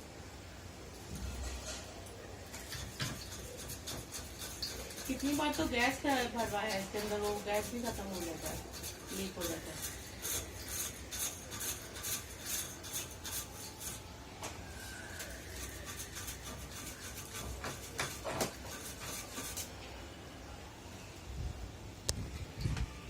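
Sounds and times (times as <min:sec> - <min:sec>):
scrubbing strokes: 0:02.6 - 0:19.7.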